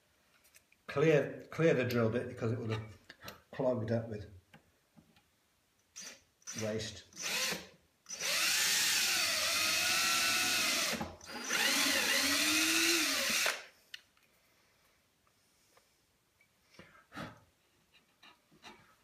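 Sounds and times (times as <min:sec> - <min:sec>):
small power drill drilling wood: 0:06.0 - 0:13.7.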